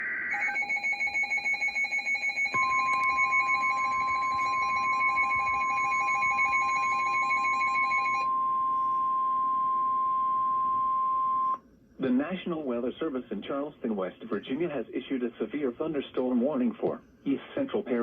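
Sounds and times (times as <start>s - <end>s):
radio alarm beeping rapidly: 0.3s - 9.0s
steady warning alarm tone: 0.3s - 11.6s.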